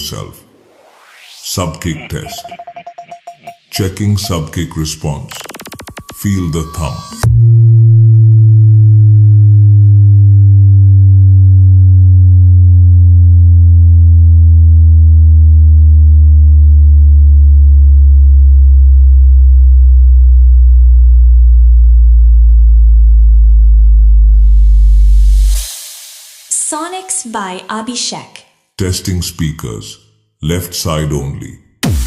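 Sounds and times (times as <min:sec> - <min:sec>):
deep bass tone sliding lower: 0:07.2 - 0:25.7.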